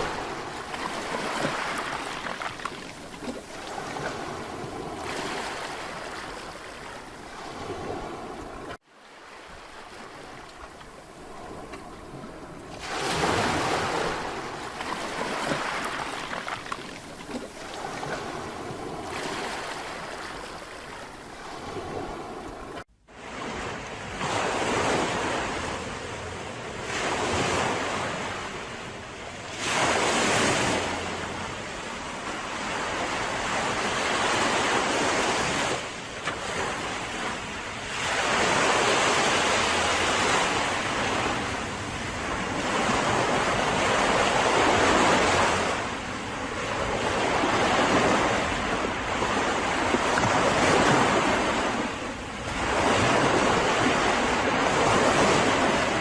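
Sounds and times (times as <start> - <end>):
waves breaking on a beach: 0.0 - 56.0.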